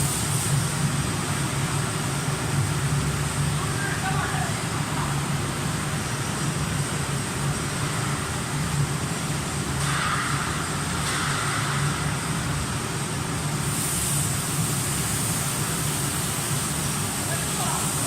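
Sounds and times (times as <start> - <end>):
washing machine low hum: 0.0 - 18.0
high hiss: 9.8 - 18.0.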